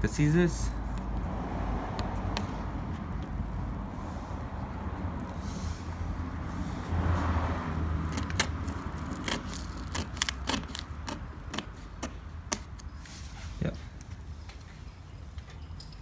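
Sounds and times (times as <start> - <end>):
scissors snipping: 8.1 - 12.9.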